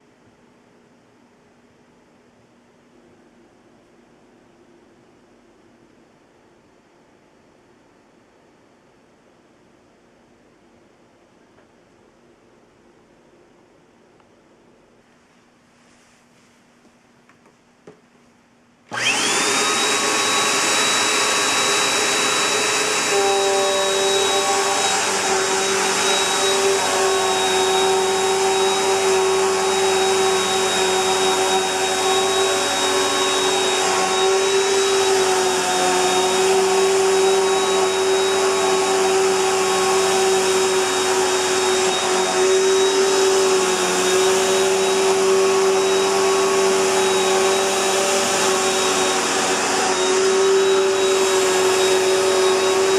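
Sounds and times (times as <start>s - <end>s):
vacuum cleaner running: 18.9s - 52.9s.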